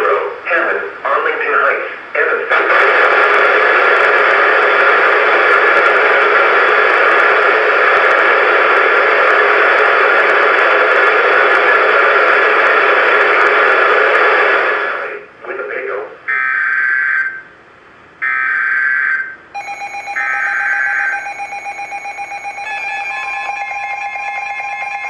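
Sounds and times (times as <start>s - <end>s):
radio static hiss: 0.0s - 15.9s.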